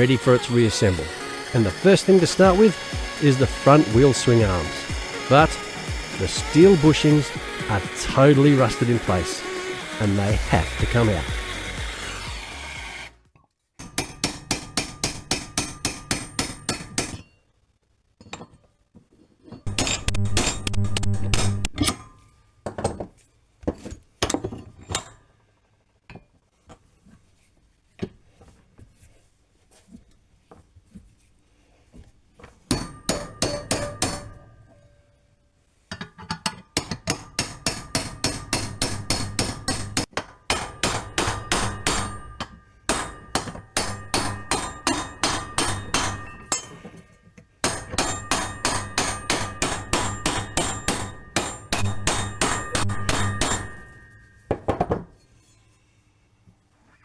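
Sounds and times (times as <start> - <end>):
hammer striking steel: 0.0 - 13.1, 13.8 - 17.2, 19.7 - 22.0, 32.7 - 34.8, 36.8 - 55.6.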